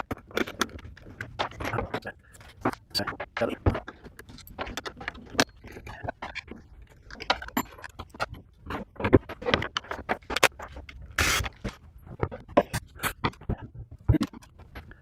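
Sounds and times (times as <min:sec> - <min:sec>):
clatter of hard objects handled: 0:00.0 - 0:15.0.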